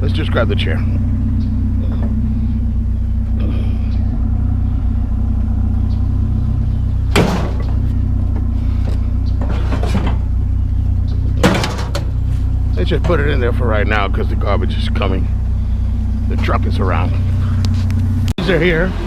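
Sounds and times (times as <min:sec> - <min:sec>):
truck engine idling: 0:00.0 - 0:19.0
loud knocks: 0:07.1 - 0:08.4, 0:11.4 - 0:12.2.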